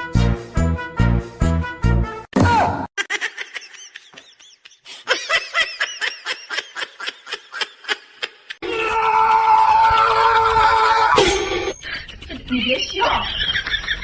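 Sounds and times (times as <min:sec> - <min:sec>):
person laughing: 0:03.0 - 0:08.6.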